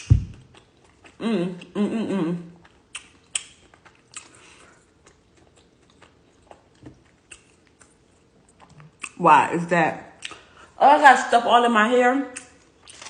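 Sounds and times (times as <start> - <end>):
person chewing with wet smacks: 0.0 - 1.8, 2.4 - 9.2.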